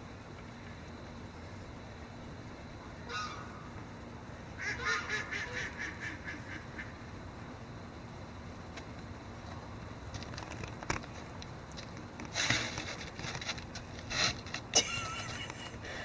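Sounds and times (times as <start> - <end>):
bird calling: 3.0 - 3.7, 4.6 - 7.0.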